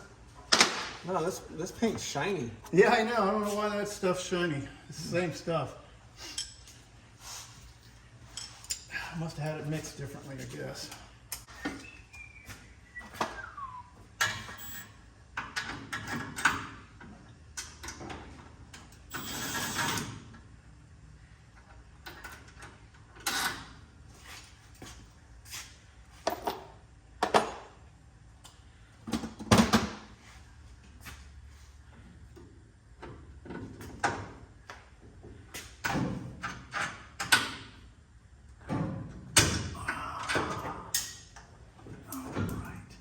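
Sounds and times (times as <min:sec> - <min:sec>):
hand tools and metal parts clanking: 0:08.2 - 0:09.5.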